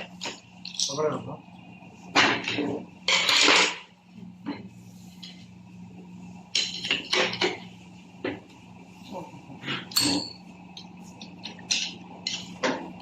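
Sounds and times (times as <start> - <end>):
metal parts clinking and scraping: 0.0 - 1.2, 2.4 - 3.9, 6.5 - 7.6, 9.8 - 12.6
steady low hum: 0.0 - 13.0.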